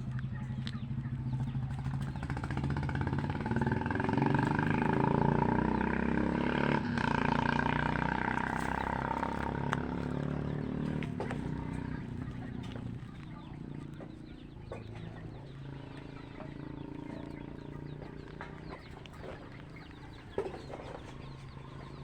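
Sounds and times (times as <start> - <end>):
vehicle engine running: 0.0 - 22.0.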